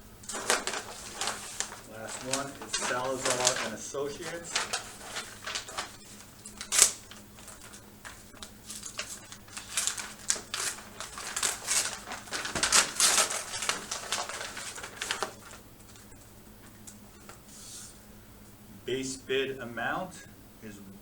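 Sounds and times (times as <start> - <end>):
paper ripping: 0.2 - 16.1
paper rustling and crinkling: 0.2 - 18.0.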